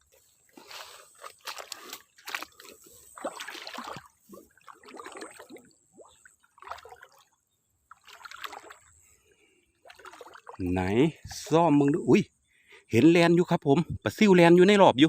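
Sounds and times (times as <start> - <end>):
water sloshing and splashing: 0.1 - 11.0.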